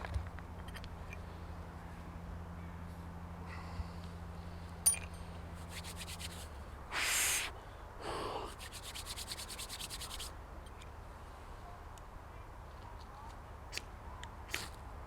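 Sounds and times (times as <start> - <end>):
knife blade scraping: 4.9 - 6.6.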